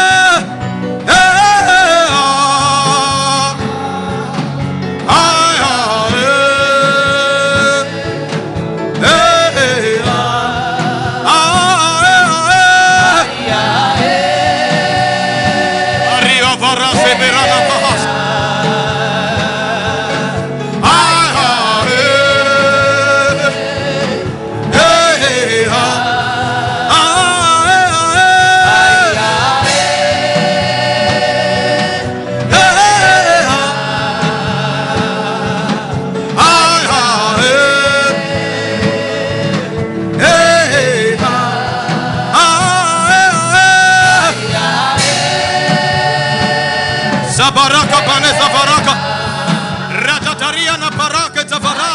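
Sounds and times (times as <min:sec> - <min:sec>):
gospel worship singing: 0:00.0 - 0:51.9
musical backing: 0:00.0 - 0:51.9.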